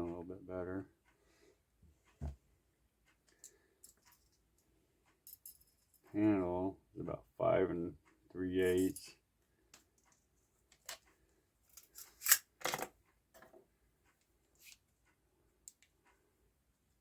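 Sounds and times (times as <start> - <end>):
tools handled on a table: 11.7 - 13.6.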